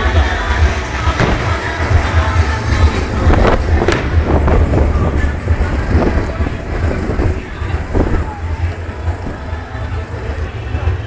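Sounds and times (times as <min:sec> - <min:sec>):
fireworks bangs: 0:00.0 - 0:11.0
wind rumble on microphone: 0:00.0 - 0:11.0.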